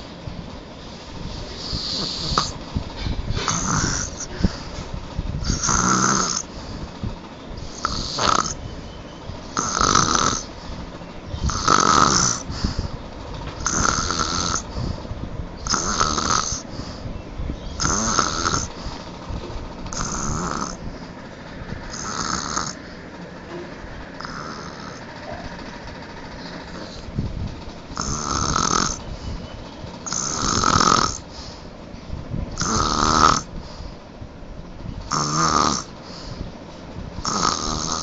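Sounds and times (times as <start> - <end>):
person snoring loudly: 1.6 - 2.6, 3.5 - 4.7, 5.4 - 6.5, 7.6 - 8.6, 9.6 - 10.5, 11.5 - 12.8, 13.6 - 14.9, 15.6 - 16.7, 17.8 - 18.8, 19.9 - 20.8, 21.8 - 22.8, 24.2 - 25.4, 28.0 - 29.0, 30.1 - 31.3, 32.6 - 33.5, 35.1 - 36.0, 37.2 - 38.0.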